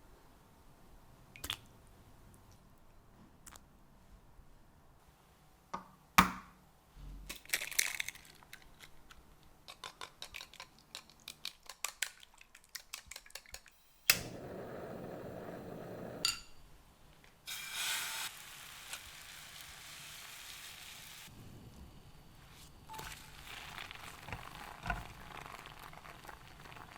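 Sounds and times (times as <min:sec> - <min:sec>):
soft steady hiss: 0:13.6 - 0:26.9.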